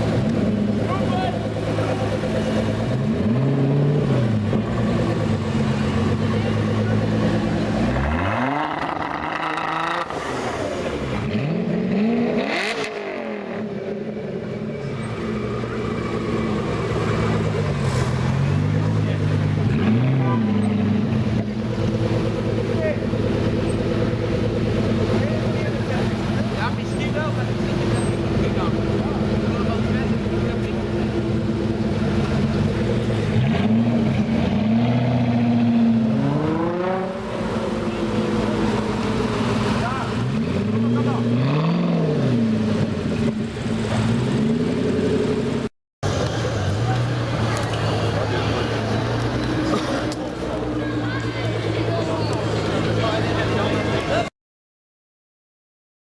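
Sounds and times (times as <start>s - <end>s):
sports car engine revving: 0.0s - 54.3s.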